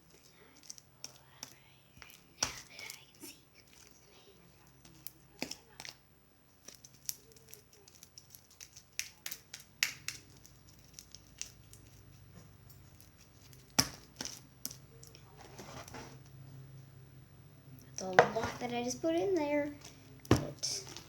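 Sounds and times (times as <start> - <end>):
slime clicking and snapping: 6.6 - 11.9.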